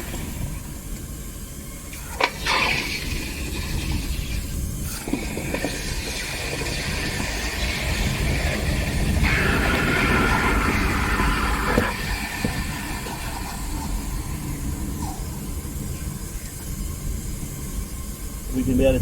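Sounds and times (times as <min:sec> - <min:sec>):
gas burner hissing and rumbling: 0:00.0 - 0:19.0.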